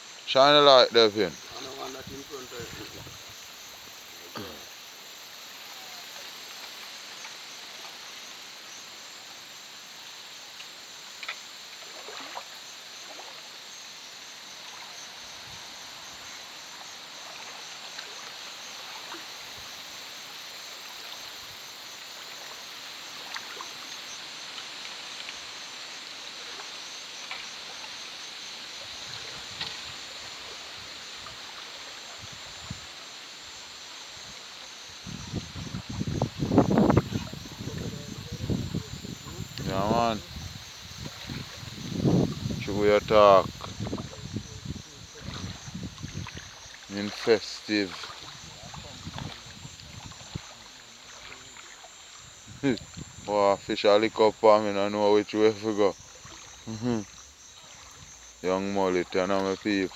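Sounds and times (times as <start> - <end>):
insects chorus: 0.0 - 59.9
stream running water: 0.0 - 59.9
faint knocks or splashes: 10.6 - 13.5, 21.9 - 25.4, 26.4 - 28.1, 28.8 - 32.9, 34.2 - 53.3, 55.6 - 58.4.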